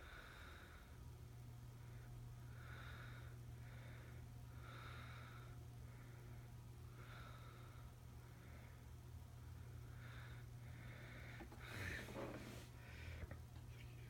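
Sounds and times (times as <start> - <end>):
ceiling fan motor hum: 0.0 - 14.0
fan air swishes: 11.4 - 13.1.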